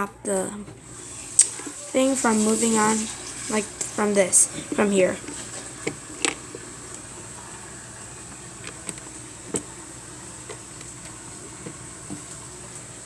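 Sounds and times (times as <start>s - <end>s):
steady hiss: 0.8s - 13.0s.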